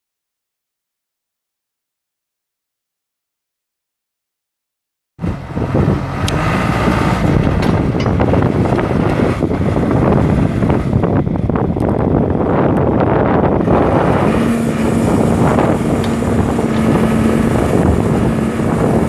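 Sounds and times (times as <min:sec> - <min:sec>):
diesel engine running: 0:05.2 - 0:19.0.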